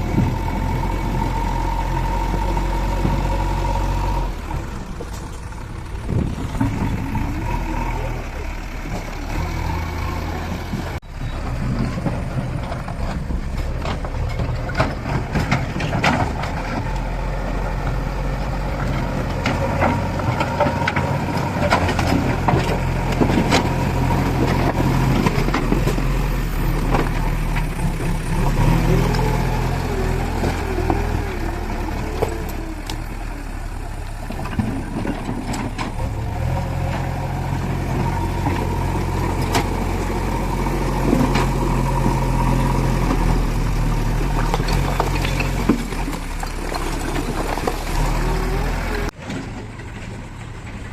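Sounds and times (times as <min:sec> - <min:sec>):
diesel engine running: 0:00.0 - 0:50.9
knocks and clanks: 0:11.5 - 0:17.0.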